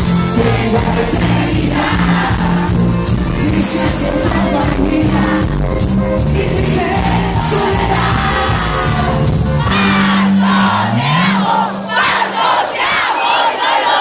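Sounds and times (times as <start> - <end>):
person singing: 0.0 - 2.6, 3.3 - 5.7
live band music: 0.0 - 12.9
crowd: 0.0 - 14.0.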